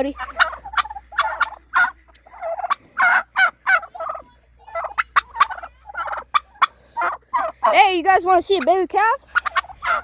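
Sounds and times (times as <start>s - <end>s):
turkeys gobbling: 0.0s - 10.0s.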